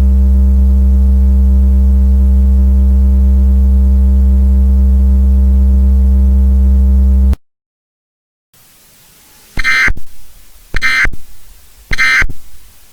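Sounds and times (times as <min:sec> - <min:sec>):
faint hiss: 0:08.6 - 0:12.9
electronic buzzing drone: 0:09.6 - 0:12.9
shrill data bursts: 0:09.6 - 0:12.9.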